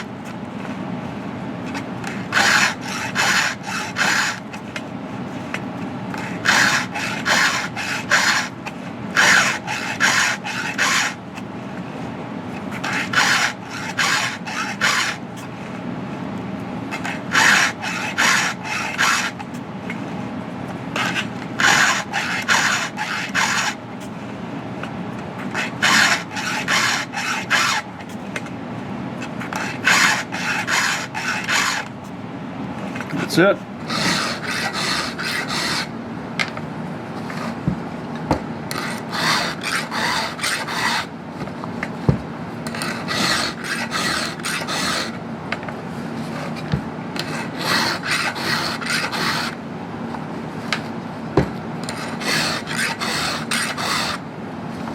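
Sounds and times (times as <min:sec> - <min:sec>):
file rasping on chainsaw chain: 0:02.3 - 0:04.4, 0:06.2 - 0:08.5, 0:09.2 - 0:11.2, 0:12.8 - 0:15.2, 0:17.0 - 0:19.4, 0:21.0 - 0:23.8, 0:25.5 - 0:27.8, 0:29.5 - 0:31.9, 0:33.8 - 0:35.9, 0:38.7 - 0:41.1, 0:42.7 - 0:45.2, 0:47.2 - 0:49.6, 0:51.8 - 0:54.2.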